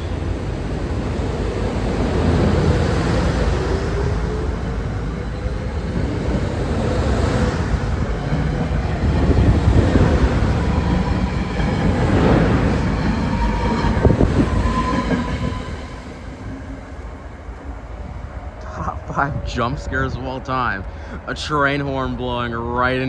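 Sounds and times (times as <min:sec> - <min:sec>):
wheels rumbling on rails: 0:00.0 - 0:23.0
wheel squeal: 0:12.6 - 0:16.1.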